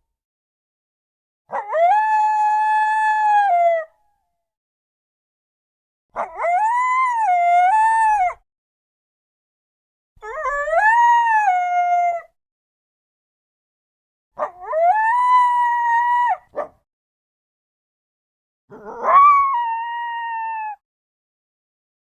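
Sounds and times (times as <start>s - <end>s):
coyote howling: 14.4s - 16.4s, 18.7s - 20.8s.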